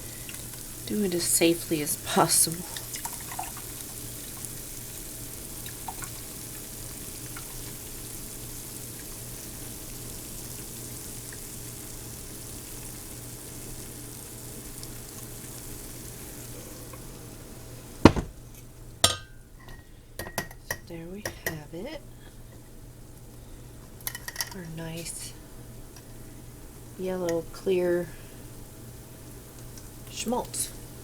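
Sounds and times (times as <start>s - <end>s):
chicken fat sizzling: 0.0s - 20.2s, 21.0s - 31.0s
sharp knock: 18.0s - 18.4s.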